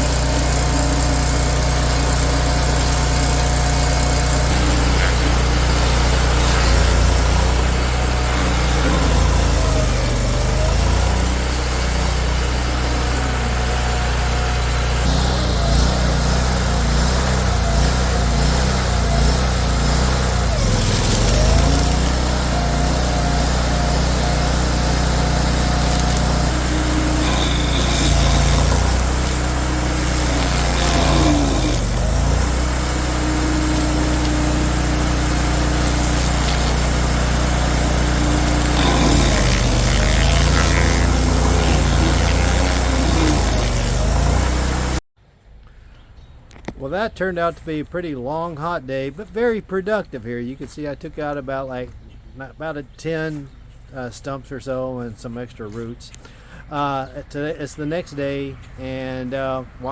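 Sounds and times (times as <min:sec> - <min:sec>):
stump grinder engine running: 0:00.0 - 0:45.0.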